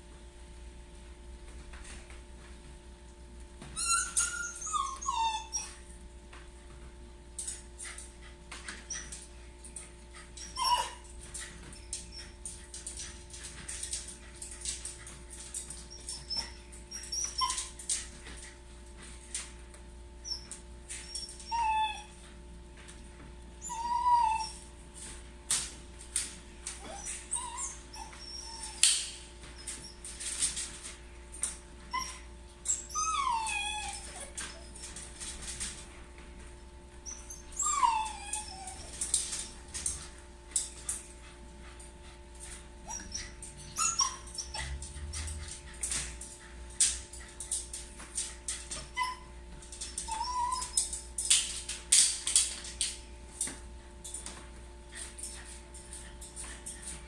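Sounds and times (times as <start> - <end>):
dog whining: 3.8 - 5.9, 8.8 - 9.3, 10.1 - 13.8, 15.6 - 18.0, 20.2 - 22.2, 23.6 - 24.8, 26.8 - 30.0, 31.9 - 35.0, 37.0 - 40.0, 42.8 - 46.4, 48.2 - 51.1
clicks and rustles: 7.4 - 19.9, 38.6 - 57.0.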